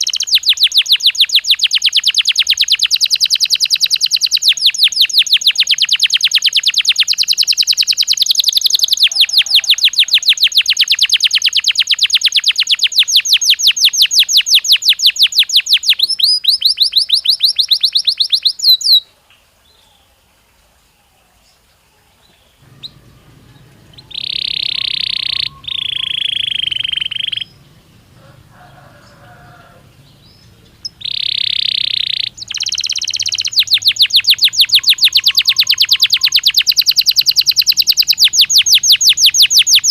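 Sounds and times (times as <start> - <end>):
canary trilling: 0.0 - 19.0, 22.6 - 39.9
canary whistled notes: 22.6 - 27.6, 31.0 - 39.9.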